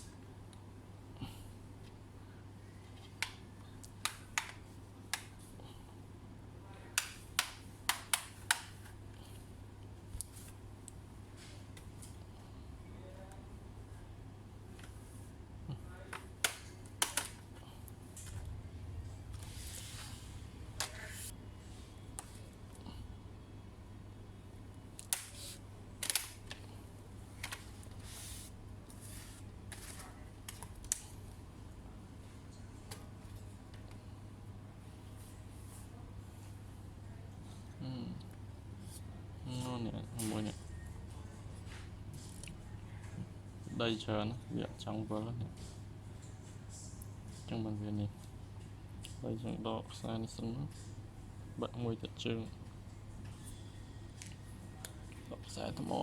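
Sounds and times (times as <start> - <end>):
faint steady hum: 0.0 - 56.0
sharp clicks of laptop parts: 3.2 - 5.4, 7.0 - 9.0, 16.1 - 17.5, 25.0 - 26.7.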